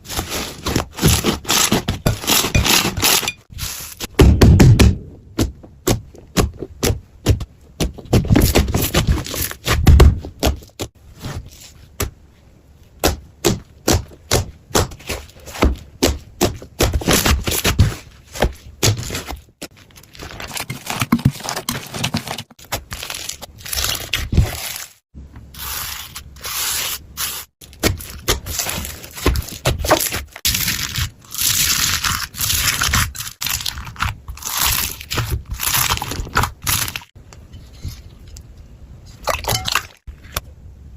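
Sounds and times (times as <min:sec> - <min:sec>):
slime scraping and crackling: 0:17.0 - 0:37.9.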